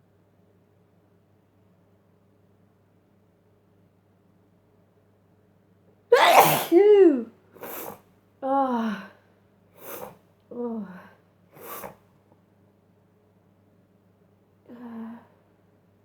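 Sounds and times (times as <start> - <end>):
breathy voiced sounds: 6.1 - 8.0, 9.8 - 12.0
loud sneeze: 6.1 - 8.0, 9.8 - 10.1, 11.6 - 12.0.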